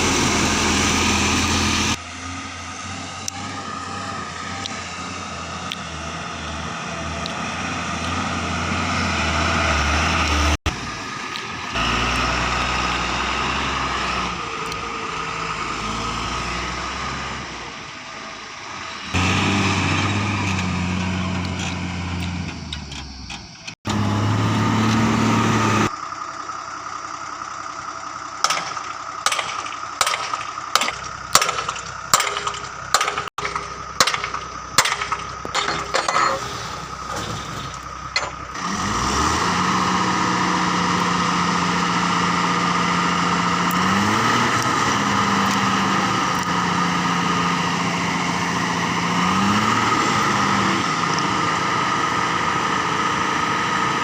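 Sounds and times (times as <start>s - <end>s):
heavy diesel engine running: 0.0s - 54.0s
sharp repeated knocks: 28.4s - 36.0s.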